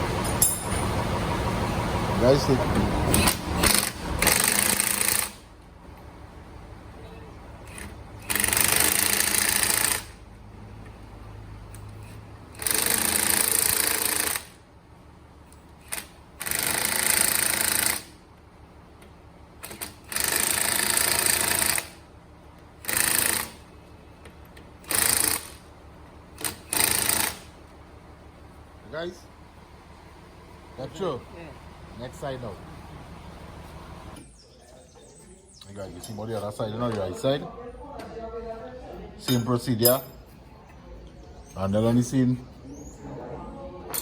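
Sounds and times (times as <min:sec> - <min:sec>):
impact wrench hammering: 0:00.2 - 0:01.0.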